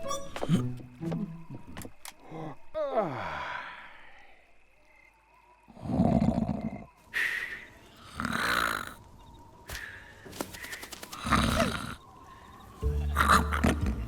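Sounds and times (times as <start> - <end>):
cartoon snoring: 5.8 - 6.9, 8.0 - 9.0.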